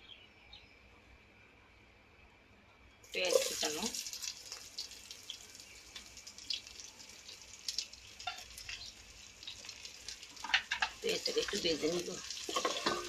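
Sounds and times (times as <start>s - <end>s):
onions sizzling in hot oil: 3.1s - 13.0s.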